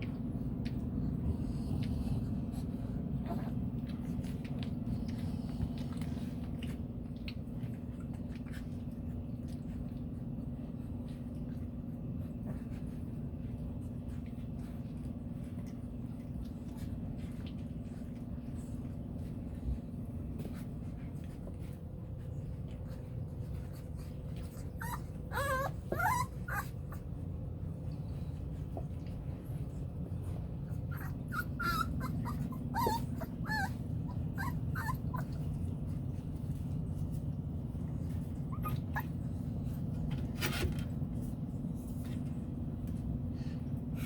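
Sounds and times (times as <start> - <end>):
puppies growling: 0.0 - 44.0
puppies whining and yelping: 23.2 - 27.3, 30.6 - 35.9, 38.1 - 39.8.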